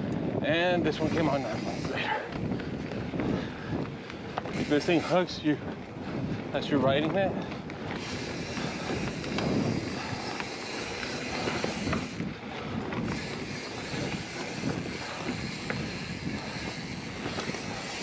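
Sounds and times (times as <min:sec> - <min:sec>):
bike tyres rolling on dirt: 0:00.0 - 0:18.0
wind rushing over microphone: 0:00.0 - 0:18.0.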